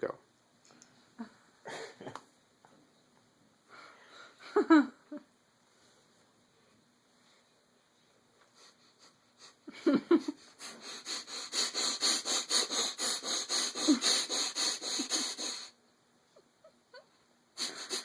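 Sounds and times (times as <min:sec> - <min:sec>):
person sniffing rapidly: 0:10.3 - 0:15.8, 0:17.6 - 0:18.0.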